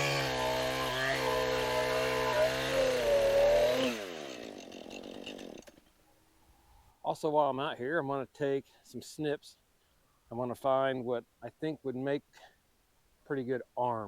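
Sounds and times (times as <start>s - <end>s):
chainsaw cutting logs: 0.0s - 6.0s.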